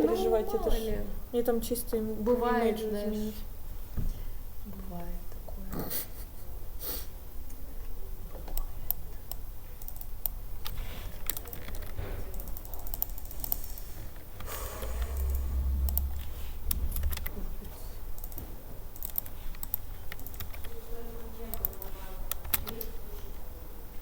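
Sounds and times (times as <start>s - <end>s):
typing on computer keyboard: 8.9s - 10.4s, 19.0s - 20.7s, 21.5s - 22.9s
low rumble: 14.4s - 18.2s.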